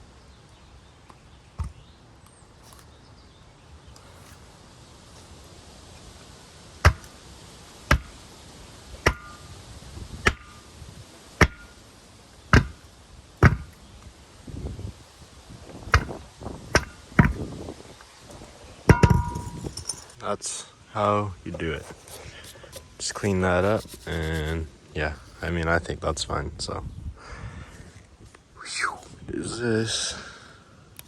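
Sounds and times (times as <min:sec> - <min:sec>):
hammer blows on metal: 0:18.9 - 0:20.0.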